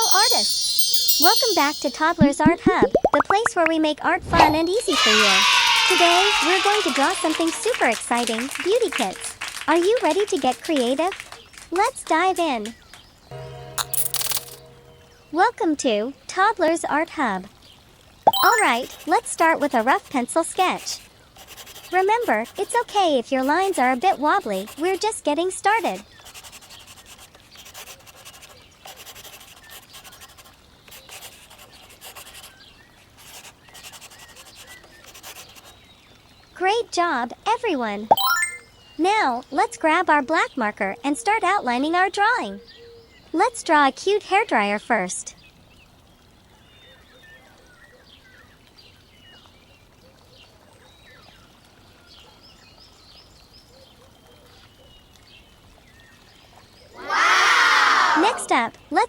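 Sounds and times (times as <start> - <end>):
pencil scratching on paper: 18.6 - 25.1, 25.7 - 35.7.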